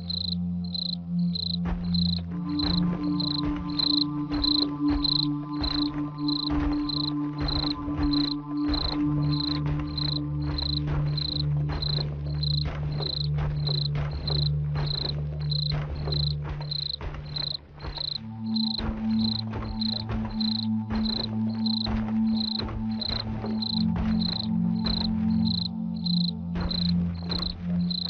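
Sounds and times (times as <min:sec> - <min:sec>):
cricket chirping: 0:00.0 - 0:28.0
eerie low drone music: 0:00.0 - 0:28.0.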